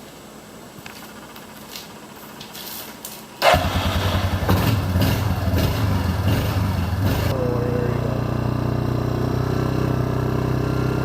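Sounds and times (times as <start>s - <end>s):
vehicle engine starting and running: 3.4s - 11.0s.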